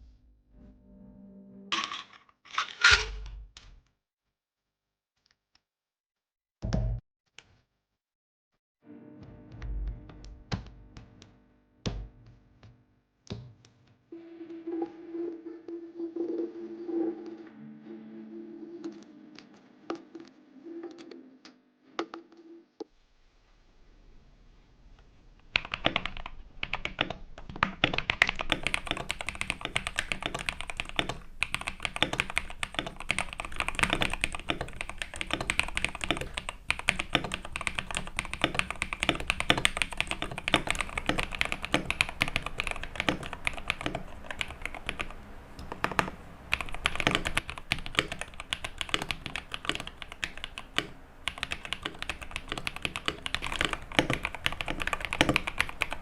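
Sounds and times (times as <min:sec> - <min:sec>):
rapid typing on mechanical keyboard: 0:25.6 - 0:56.0.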